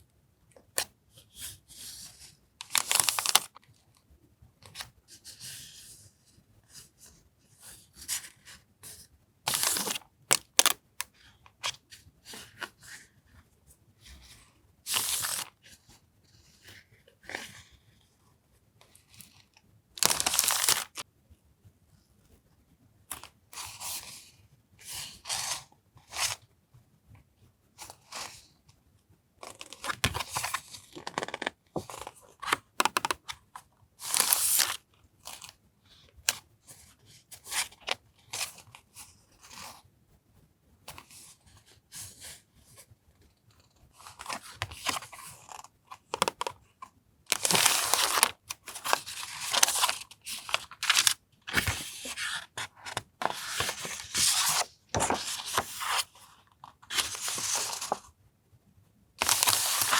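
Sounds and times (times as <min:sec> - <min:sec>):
packaging crinkling and tearing: 0:02.7 - 0:03.5, 0:47.3 - 0:52.4, 0:53.3 - 0:56.0, 0:59.2 - 0:59.9.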